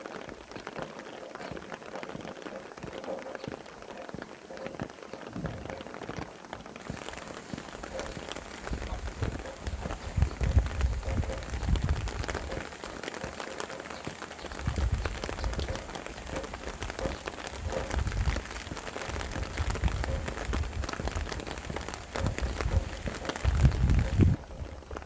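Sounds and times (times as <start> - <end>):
rain pattering: 0.0 - 25.0
wind gusts rumbling: 5.3 - 25.0.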